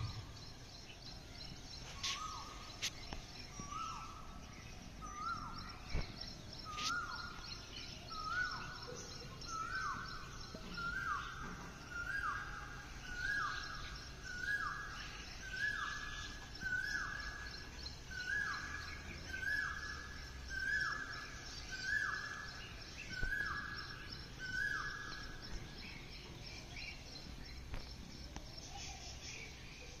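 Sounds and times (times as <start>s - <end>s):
faint bird chirps: 0.0s - 30.0s.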